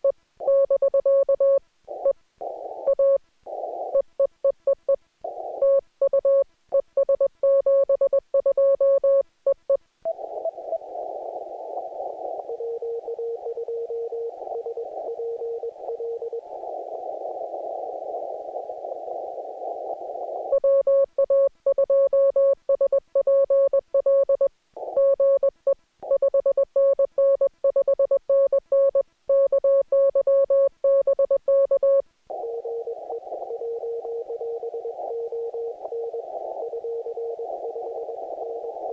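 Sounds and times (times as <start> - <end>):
faint lower-pitched morse signal: 10.0 - 25.5, 26.1 - 38.9.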